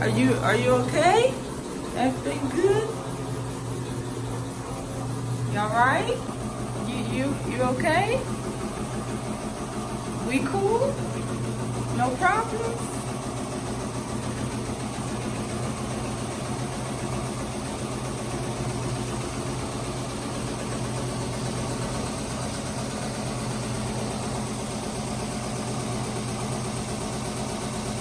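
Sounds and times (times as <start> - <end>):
washing machine spin cycle hum: 0.0 - 28.0.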